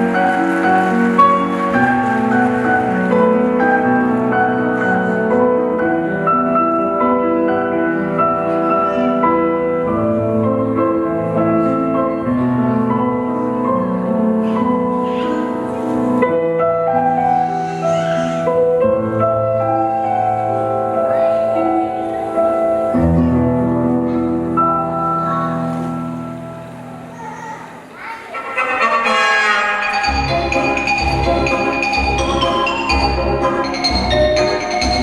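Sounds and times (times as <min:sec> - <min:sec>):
instrumental music with held notes: 0:28.4 - 0:35.0.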